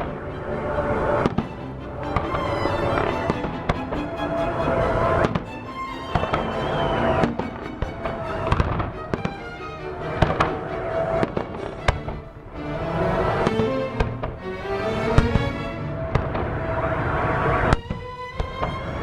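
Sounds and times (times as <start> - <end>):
music playing: 0.0 - 10.5.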